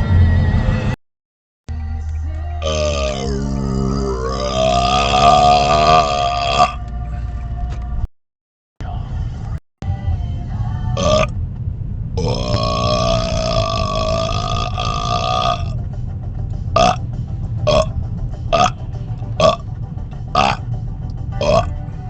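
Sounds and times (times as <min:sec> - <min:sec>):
low rumble of moving car: 0:00.0 - 0:01.0, 0:01.7 - 0:08.1, 0:08.8 - 0:22.0
man burping: 0:02.6 - 0:06.8, 0:11.0 - 0:11.3, 0:12.2 - 0:15.8, 0:19.4 - 0:19.6, 0:20.4 - 0:20.6, 0:21.4 - 0:21.7.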